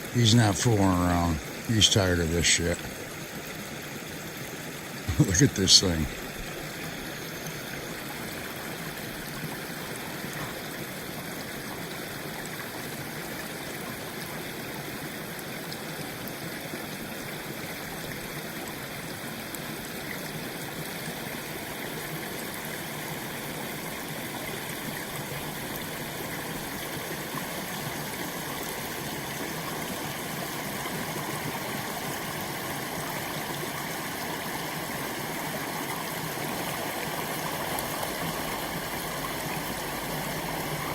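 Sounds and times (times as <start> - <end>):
water rushing through dam breach: 0.0 - 3.1, 4.2 - 7.3.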